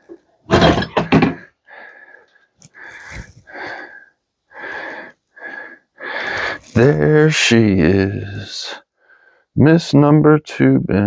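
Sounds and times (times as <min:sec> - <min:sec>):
bin opening knock and clatter: 0:00.5 - 0:01.4.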